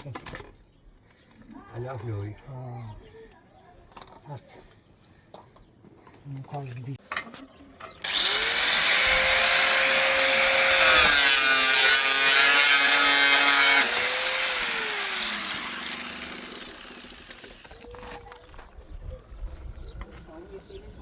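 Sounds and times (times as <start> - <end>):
power tool motor cutting: 8.0 - 17.8.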